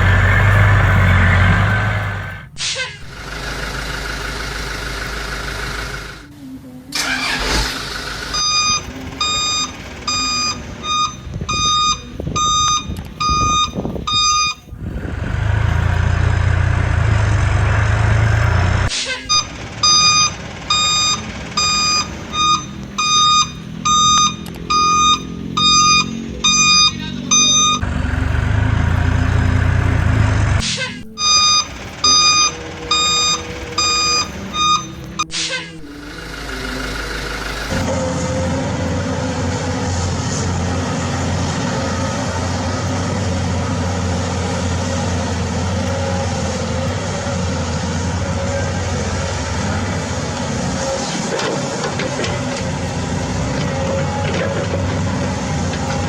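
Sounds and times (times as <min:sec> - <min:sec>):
electronic reversing beeper: 0:00.0 - 0:06.2, 0:07.0 - 0:39.0
low simulated engine hum: 0:00.0 - 0:56.0.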